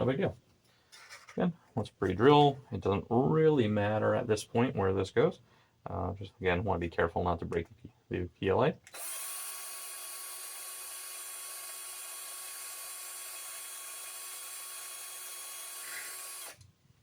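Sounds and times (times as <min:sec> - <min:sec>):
power drill drilling into plastic: 0:08.9 - 0:16.7.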